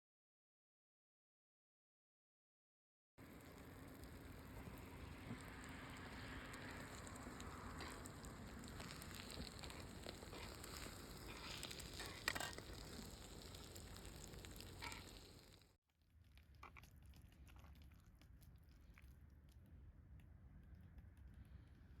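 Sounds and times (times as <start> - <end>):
food sizzling in a pan: 3.2 - 15.7
frying pops: 3.2 - 15.8.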